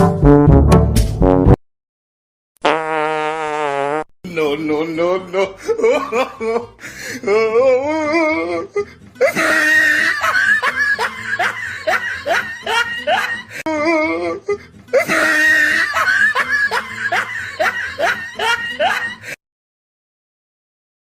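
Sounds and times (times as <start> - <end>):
music: 0.0 - 1.6, 6.4 - 19.4
person laughing: 5.2 - 19.4.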